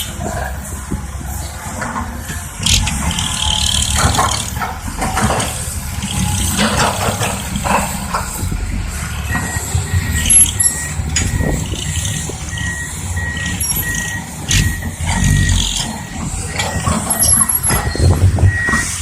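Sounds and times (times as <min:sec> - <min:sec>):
diesel machinery running: 0:00.0 - 0:19.0
backup alarm beeping: 0:02.1 - 0:19.0.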